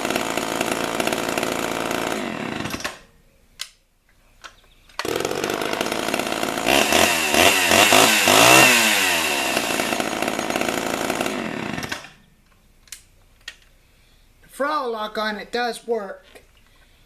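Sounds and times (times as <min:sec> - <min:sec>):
chainsaw revving: 0:00.0 - 0:03.1, 0:05.0 - 0:12.2.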